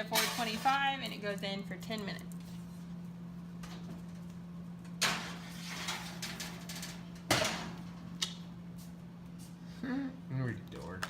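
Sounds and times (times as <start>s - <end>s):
steady low hum: 0.0s - 11.0s
oven door shutting bang: 5.0s - 7.9s.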